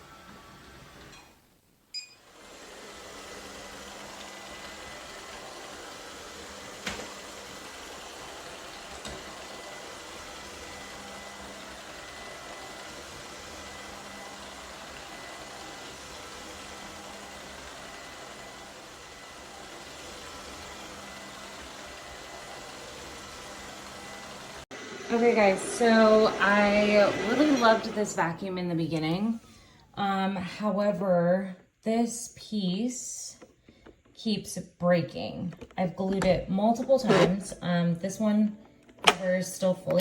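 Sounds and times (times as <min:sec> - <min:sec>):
robot vacuum cleaner whirring: 0:02.3 - 0:29.1, 0:35.0 - 0:40.0.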